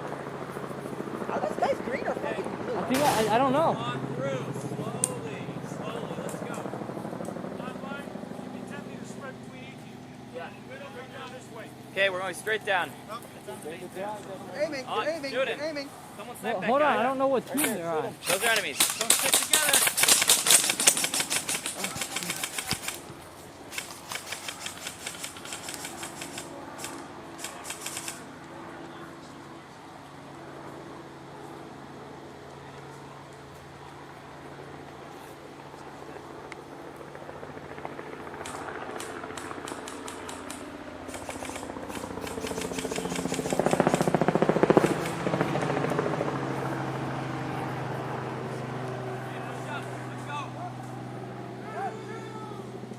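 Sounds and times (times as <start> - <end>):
airsoft guns firing full auto: 18.2 - 23.0, 23.7 - 28.2, 38.4 - 45.5
sharp rapid clicks: 18.3 - 23.0, 23.7 - 28.2, 38.4 - 44.1, 44.7 - 45.2
vehicle engine running: 39.6 - 52.9.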